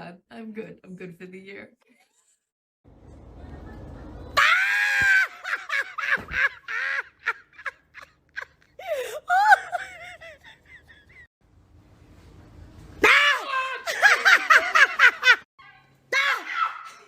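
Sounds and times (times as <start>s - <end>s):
person laughing high-pitched: 5.1s - 11.3s.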